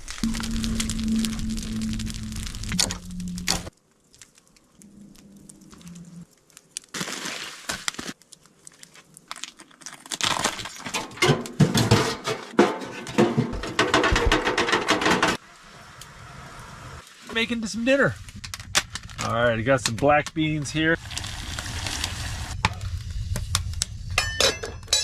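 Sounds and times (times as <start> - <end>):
crunching and crackling handling: 0.0 - 12.5, 17.4 - 22.9.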